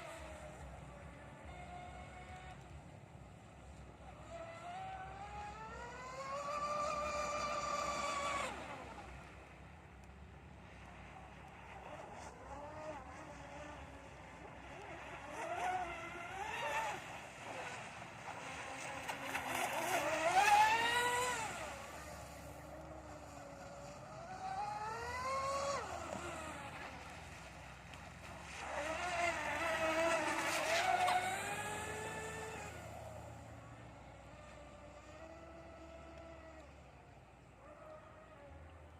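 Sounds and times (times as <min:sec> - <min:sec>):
electric motors whining: 0:04.2 - 0:09.4, 0:11.9 - 0:37.0.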